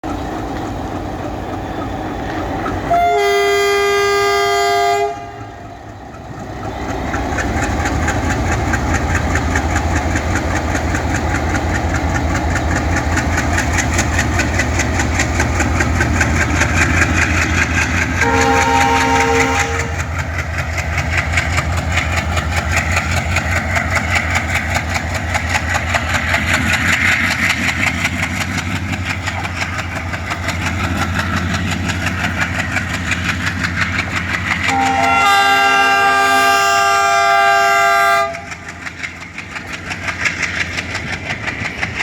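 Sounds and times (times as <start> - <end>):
diesel engine chugging: 0.0 - 42.0
locomotive horn: 2.9 - 5.8, 18.2 - 20.2, 34.7 - 38.6.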